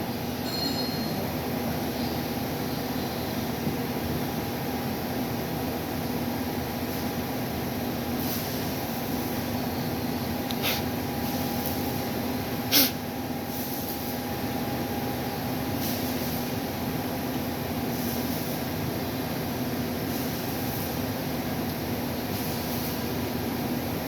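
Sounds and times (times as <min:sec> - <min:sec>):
short hissing bursts: 0:10.6 - 0:11.5, 0:12.7 - 0:14.2.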